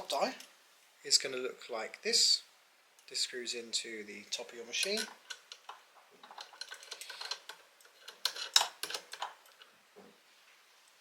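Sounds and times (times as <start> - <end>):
small metal clicks and taps: 4.8 - 9.7.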